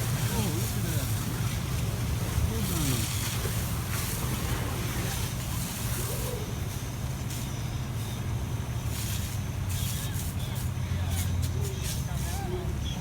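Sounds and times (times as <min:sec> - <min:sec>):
outdoor hiss: 0:00.0 - 0:10.2
boat engine running: 0:00.0 - 0:13.0.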